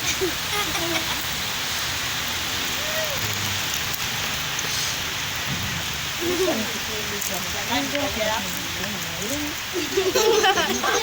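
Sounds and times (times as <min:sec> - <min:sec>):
steady rushing hiss: 0:00.0 - 0:11.0
faint voices: 0:02.7 - 0:03.8.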